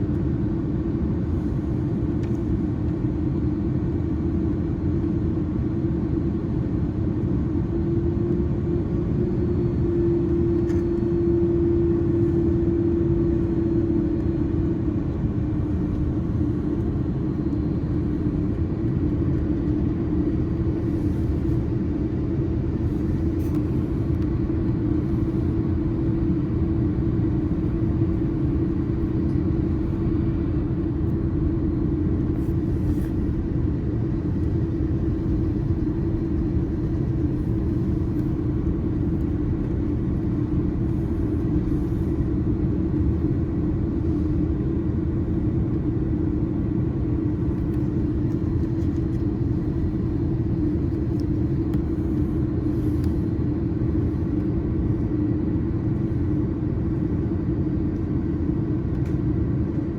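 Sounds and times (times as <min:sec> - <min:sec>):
airliner cabin drone: 0:00.0 - 0:59.9.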